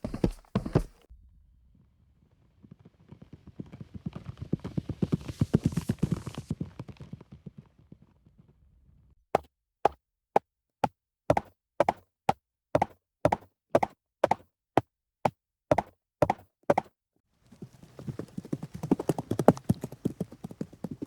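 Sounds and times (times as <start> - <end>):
clip-clop hoofbeats on hard ground: 0.0 - 1.0, 2.7 - 8.1, 12.8 - 14.4, 15.7 - 21.0
galloping horse hoofbeats: 0.0 - 1.1, 2.7 - 8.2, 15.7 - 21.0.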